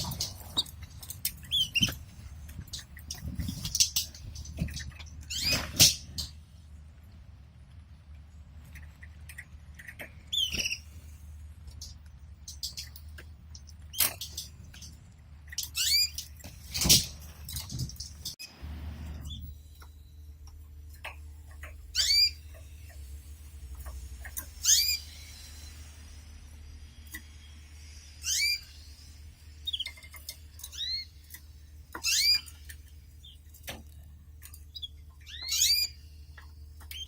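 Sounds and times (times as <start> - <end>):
birds tapping and rustling in cage: 0.0 - 6.6, 11.6 - 18.4, 20.4 - 25.0, 29.7 - 37.0
low steady hum: 0.0 - 37.0
canaries chirping: 3.2 - 6.3, 8.8 - 10.9, 15.5 - 17.0, 21.5 - 22.7, 23.9 - 25.4, 28.2 - 29.0, 29.6 - 33.6, 34.7 - 37.0.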